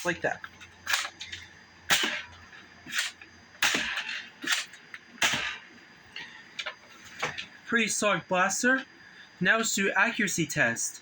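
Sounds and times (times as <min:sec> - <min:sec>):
toy blaster popping: 0:02.9 - 0:05.6.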